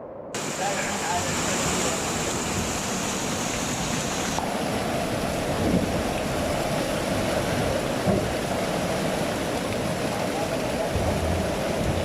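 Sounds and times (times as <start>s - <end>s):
floodwater rushing: 0.4s - 12.0s
wind buffeting microphone: 0.4s - 12.0s.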